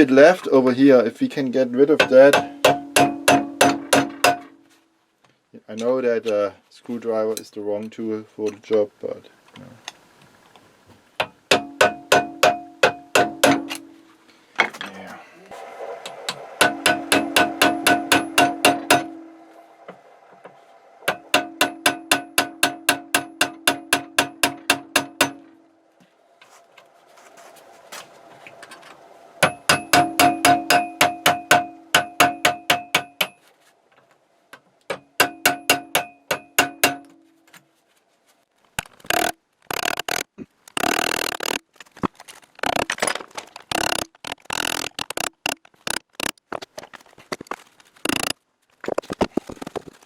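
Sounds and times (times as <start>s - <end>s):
hammer striking metal screwdriver: 11.2s - 13.9s, 16.3s - 19.1s, 21.1s - 25.5s, 29.4s - 33.4s, 34.9s - 37.2s, 43.7s - 46.3s, 48.1s - 48.3s
harsh noisy bursts: 39.0s - 41.6s, 43.7s - 46.4s, 48.0s - 48.3s.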